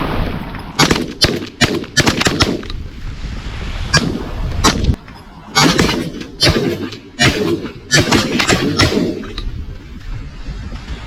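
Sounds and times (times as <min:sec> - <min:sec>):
shotgun blasts: 0:00.8 - 0:02.8, 0:05.6 - 0:09.4.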